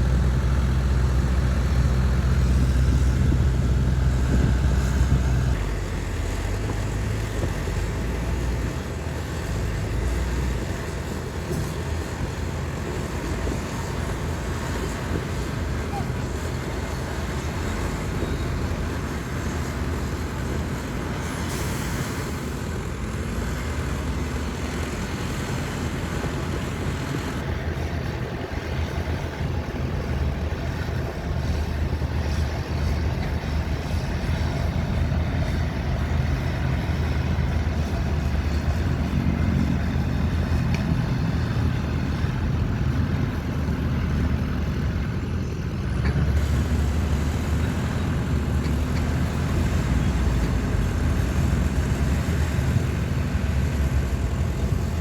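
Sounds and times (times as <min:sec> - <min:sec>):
heavy diesel machinery running: 0:00.0 - 0:55.0.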